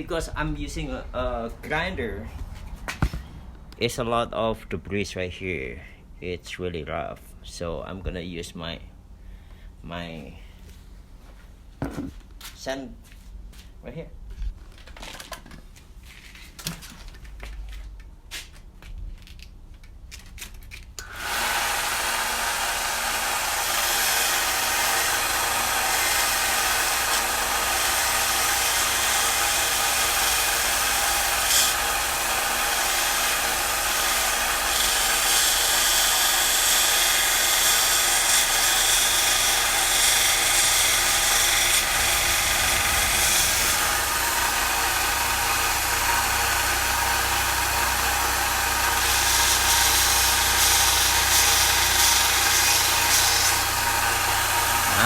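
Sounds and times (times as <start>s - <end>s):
power tool sanding metal: 21.0s - 55.0s.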